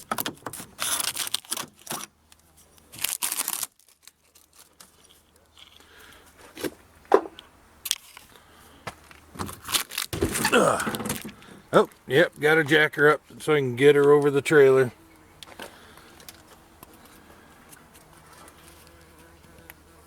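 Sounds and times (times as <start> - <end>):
plastic wrapping tearing and rustling: 0.0 - 2.1, 2.8 - 5.3, 9.4 - 11.3.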